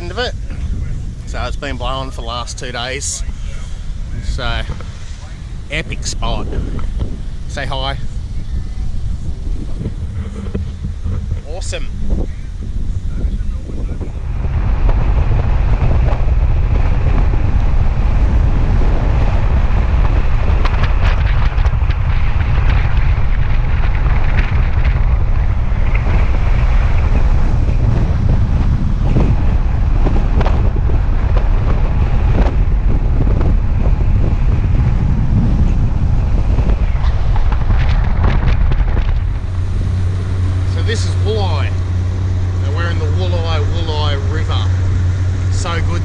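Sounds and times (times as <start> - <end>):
wind buffeting microphone: 0.0 - 46.0.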